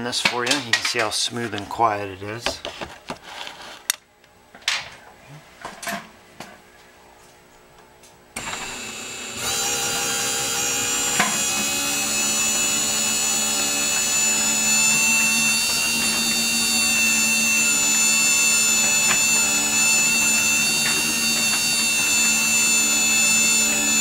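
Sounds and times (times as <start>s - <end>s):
garage door opener motor whine: 8.4s - 24.0s.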